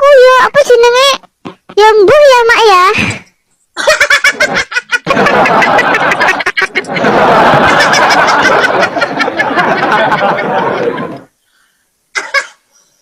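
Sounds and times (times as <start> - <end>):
people laughing loudly: 3.8 - 11.3.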